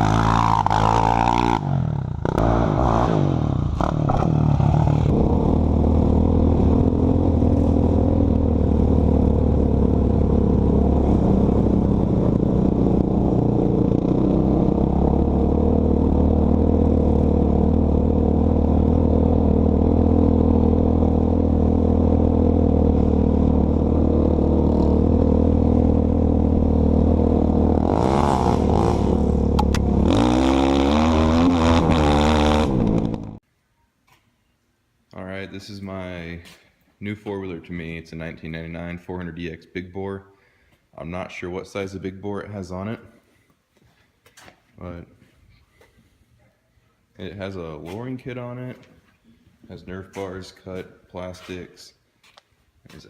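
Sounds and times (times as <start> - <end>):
atv engine revving and idling: 0.0 - 33.4.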